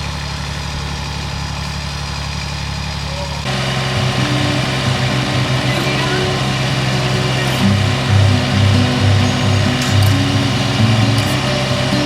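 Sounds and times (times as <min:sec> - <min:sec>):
engine idling: 0:00.0 - 0:12.0
background music: 0:04.0 - 0:12.0.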